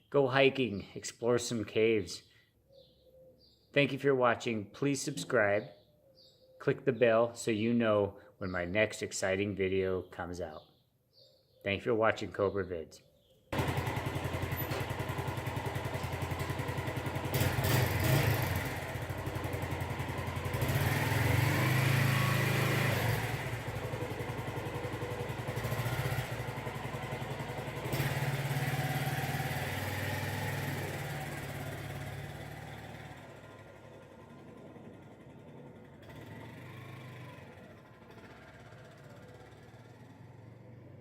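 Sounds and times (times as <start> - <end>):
motorcycle engine running: 13.5 - 41.0.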